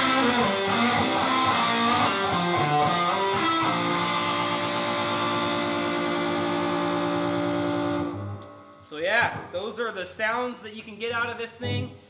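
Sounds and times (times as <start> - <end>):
overdriven electric guitar: 0.0 - 8.9.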